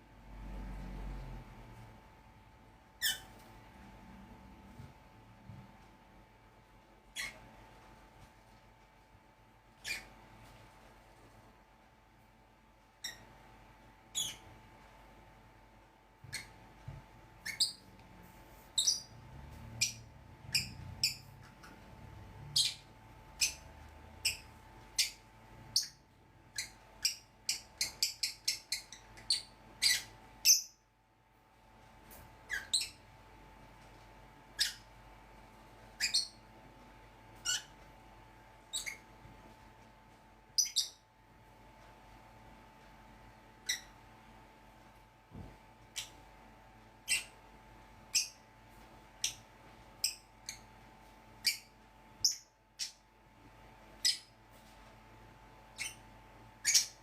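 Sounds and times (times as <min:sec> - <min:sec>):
birds chirping: 0:18.8 - 0:21.8, 0:40.6 - 0:41.0, 0:55.7 - 0:57.0.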